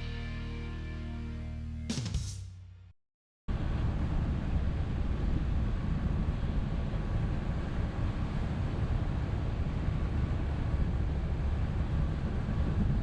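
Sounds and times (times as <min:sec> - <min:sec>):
motorboat rumble: 0:03.5 - 0:13.0
wind noise: 0:03.5 - 0:13.0.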